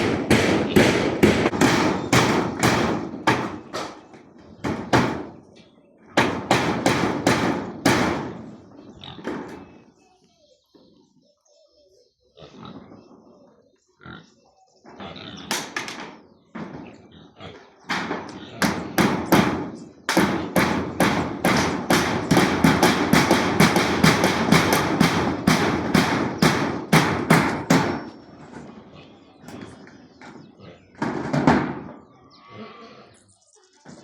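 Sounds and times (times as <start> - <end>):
fast knocks: 0.0 - 4.0, 6.2 - 8.4, 17.9 - 28.2.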